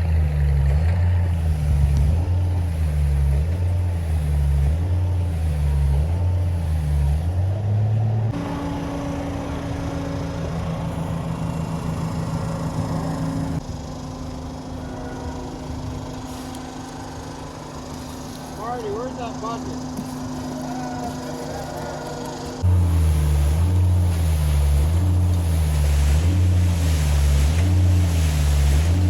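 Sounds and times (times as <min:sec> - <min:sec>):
heavy diesel truck engine: 0:00.0 - 0:29.0.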